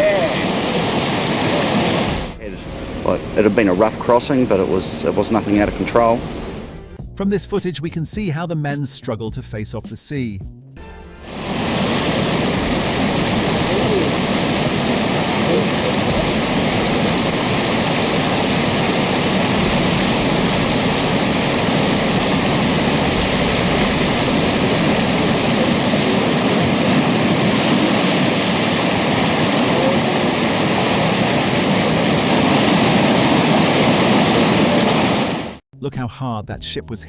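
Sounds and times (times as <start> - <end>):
heavy seas breaking against vessel: 0.0 - 6.9, 11.2 - 35.6
storm wind rushing: 0.0 - 7.0, 11.2 - 35.6.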